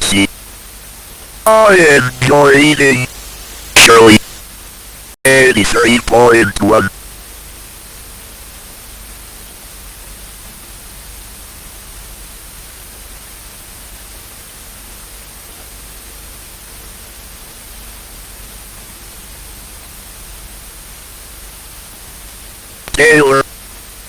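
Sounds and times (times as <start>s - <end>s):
static hiss: 0.0s - 0.3s, 1.5s - 6.9s, 22.9s - 23.6s.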